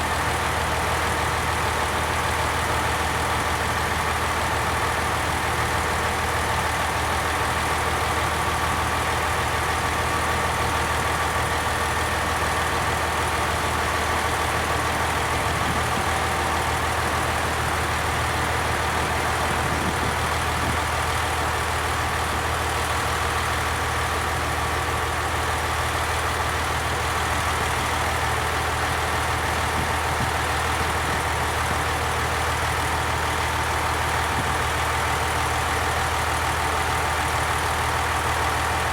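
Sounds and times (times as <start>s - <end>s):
train engine drone: 0.0s - 38.9s.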